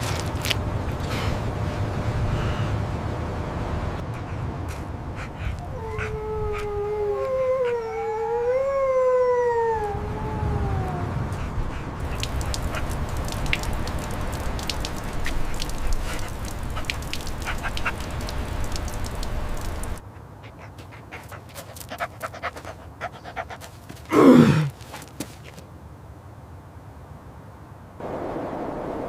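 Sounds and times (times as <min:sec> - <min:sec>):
low rumbling noise: 0:00.0 - 0:07.6, 0:28.0 - 0:29.0
dog panting: 0:04.0 - 0:06.7, 0:11.3 - 0:24.1.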